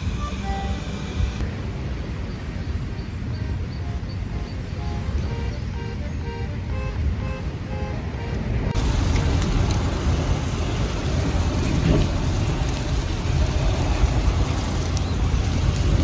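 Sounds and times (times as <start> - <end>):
wood fire hissing and crackling: 0.0 - 1.4, 8.7 - 16.0
low rumble: 3.7 - 16.0.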